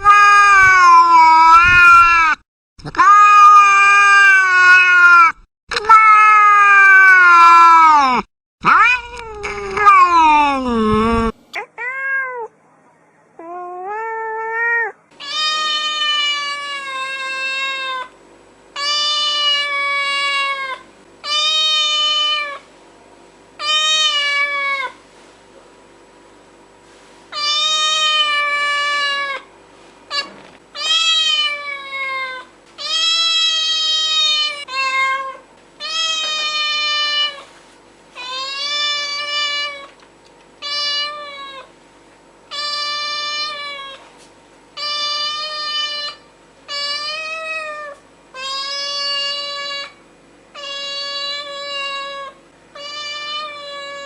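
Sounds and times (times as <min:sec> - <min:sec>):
cat meowing: 0:00.0 - 0:12.5, 0:13.4 - 0:18.1, 0:23.6 - 0:25.0, 0:27.4 - 0:29.4, 0:30.1 - 0:37.4, 0:50.6 - 0:54.0.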